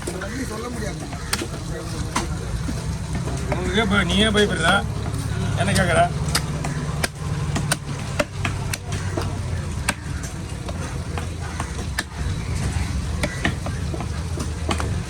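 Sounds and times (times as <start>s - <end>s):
knife chopping fish: 0.9s - 3.8s, 6.2s - 15.0s.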